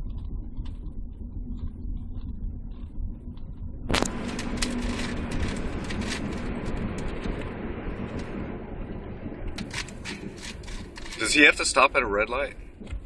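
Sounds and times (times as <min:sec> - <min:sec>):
sharp click: 0:03.9 - 0:04.7
car engine and road noise: 0:03.9 - 0:13.0.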